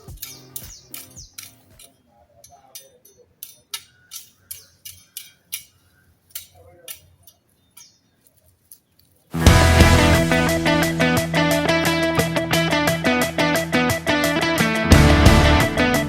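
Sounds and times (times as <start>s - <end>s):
bird chirping: 0.0s - 9.3s.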